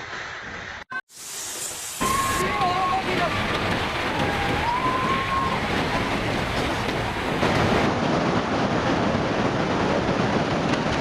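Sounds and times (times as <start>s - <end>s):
floodwater rushing: 1.3s - 8.0s.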